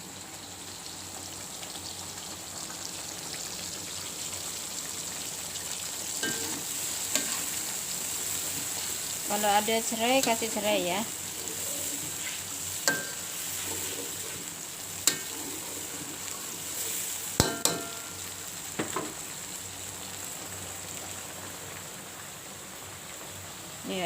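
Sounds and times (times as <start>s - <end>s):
food sizzling in a pan: 0.0s - 24.0s
utensil clinking against pan: 6.2s - 6.6s, 12.9s - 13.2s, 17.4s - 18.2s.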